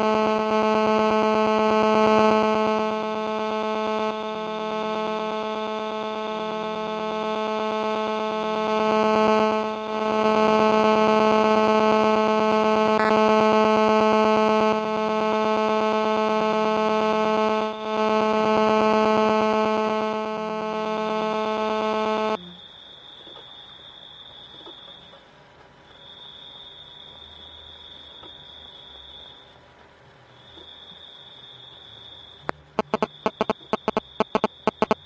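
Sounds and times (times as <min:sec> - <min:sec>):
low electronic buzz: 0:00.0 - 0:22.6, 0:32.2 - 0:35.0.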